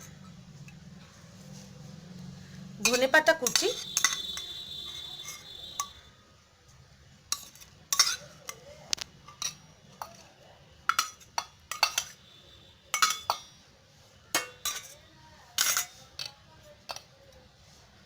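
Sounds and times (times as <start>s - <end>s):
spoon clinking against dishes: 2.8s - 6.0s, 7.3s - 8.6s, 9.3s - 10.2s, 10.9s - 12.2s, 12.9s - 13.6s, 14.4s - 15.0s, 15.6s - 17.1s.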